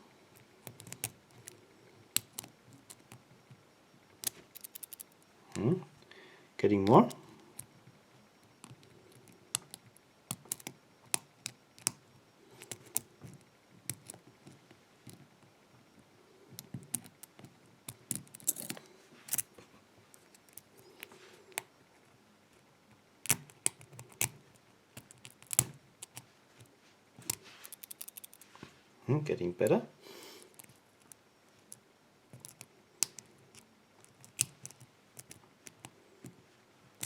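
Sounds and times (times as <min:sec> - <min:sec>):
lock pick clicking in padlock: 0:00.6 - 0:03.2, 0:04.2 - 0:05.2, 0:08.6 - 0:12.0, 0:12.6 - 0:14.2, 0:16.6 - 0:19.5, 0:25.0 - 0:26.2, 0:27.3 - 0:28.4, 0:32.4 - 0:35.9.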